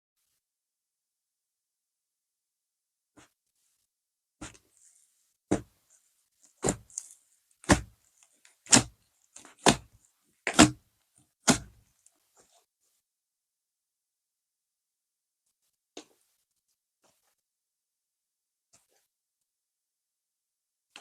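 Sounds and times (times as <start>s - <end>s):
slime squelching by hand: 6.5s - 10.8s.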